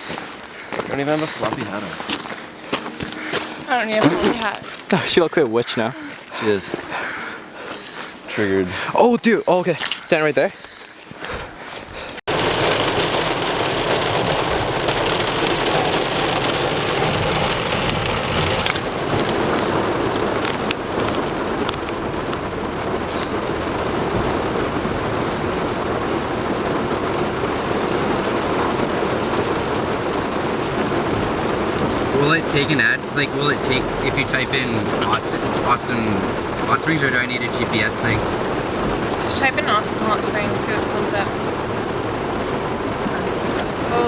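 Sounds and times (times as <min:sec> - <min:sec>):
steady rushing noise: 0:12.3 - 0:44.0.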